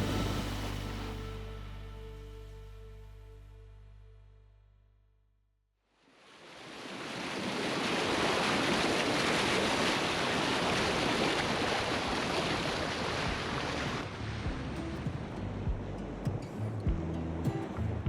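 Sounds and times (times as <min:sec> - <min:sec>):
water rushing past boat: 0:00.0 - 0:01.4, 0:06.2 - 0:15.8
music: 0:00.0 - 0:04.7, 0:14.4 - 0:18.0.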